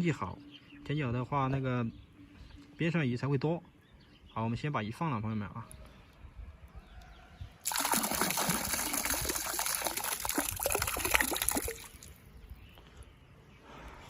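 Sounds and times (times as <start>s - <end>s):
water gushing into river: 7.6s - 12.2s.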